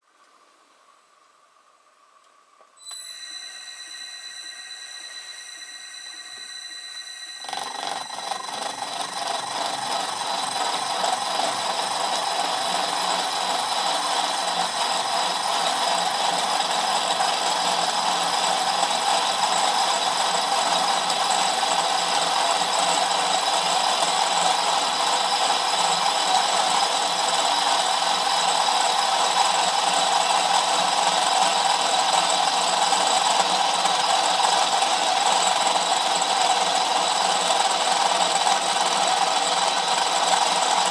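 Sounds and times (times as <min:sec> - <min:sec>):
drill machine whining: 0:02.8 - 0:40.9
metal cutting grind: 0:03.4 - 0:19.3.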